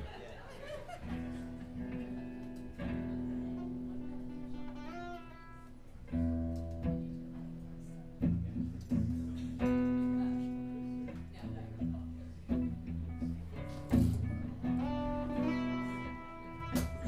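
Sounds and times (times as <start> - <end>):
acoustic guitar chords: 1.0 - 17.0.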